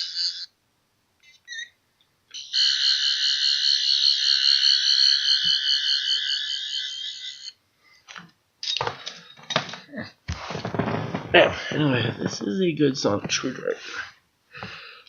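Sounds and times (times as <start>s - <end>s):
toy electronic chirps: 0.0s - 0.5s, 1.2s - 1.8s, 2.4s - 7.6s
toy warbling electronic buzz: 0.0s - 0.5s, 2.4s - 7.6s.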